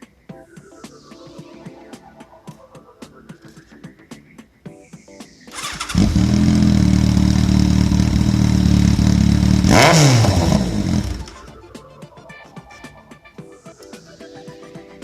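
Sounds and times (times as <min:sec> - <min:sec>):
motorcycle engine idling: 0:05.6 - 0:11.5
motorcycle starter cranking: 0:05.6 - 0:11.5.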